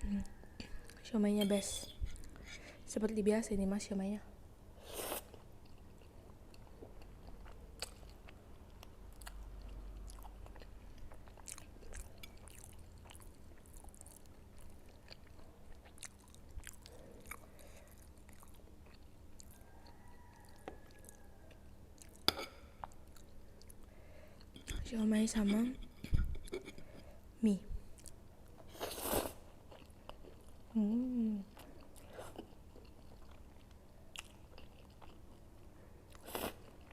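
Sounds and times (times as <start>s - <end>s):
person chewing: 4.9s - 24.8s, 27.9s - 30.8s, 31.6s - 36.9s.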